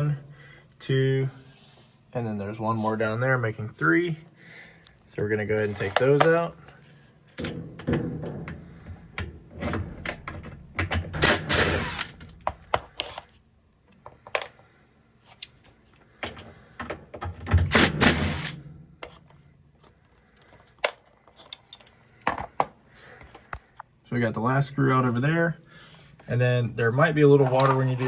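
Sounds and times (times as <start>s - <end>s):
tool handling clicks and knocks: 5.7s - 23.9s
impact driver hammering: 17.6s - 18.6s.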